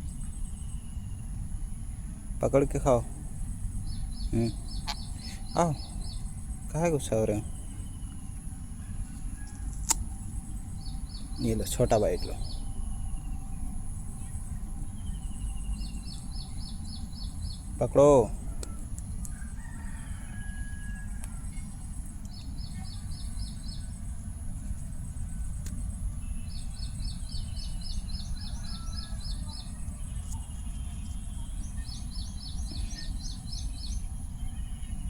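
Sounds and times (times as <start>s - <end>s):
baby parrot chirping: 4.5s - 5.6s.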